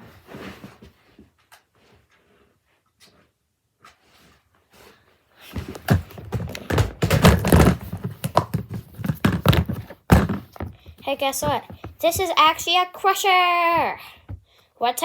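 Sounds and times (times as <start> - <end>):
hard toy pieces knocking together: 5.6 - 12.0.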